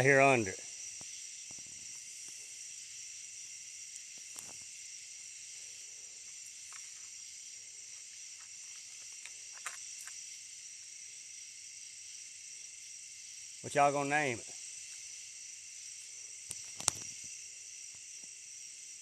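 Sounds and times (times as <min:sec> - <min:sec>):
night insects chorus: 0:00.0 - 0:19.0
faint clicks: 0:16.5 - 0:17.1.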